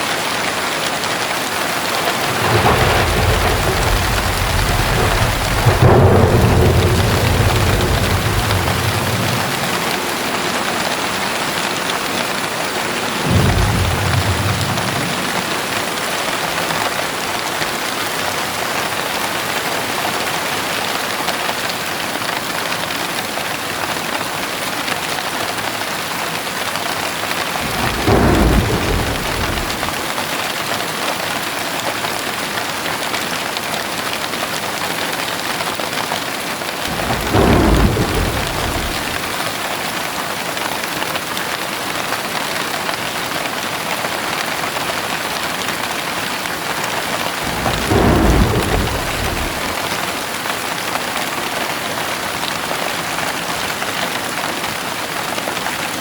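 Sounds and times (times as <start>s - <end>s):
heavy rain falling: 0.0s - 56.0s
low rolls of thunder: 1.5s - 17.9s, 27.4s - 30.2s, 36.8s - 40.0s, 45.8s - 50.5s.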